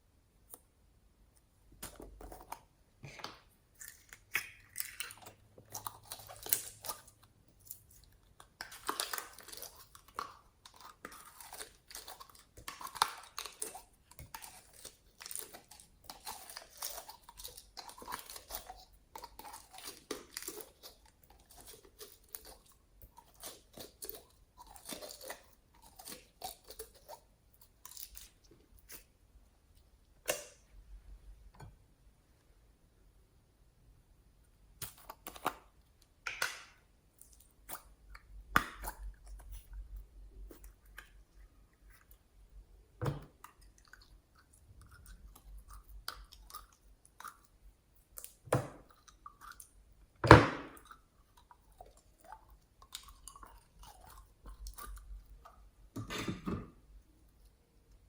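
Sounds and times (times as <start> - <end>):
slime squishing and crackling: 3.7 - 28.4.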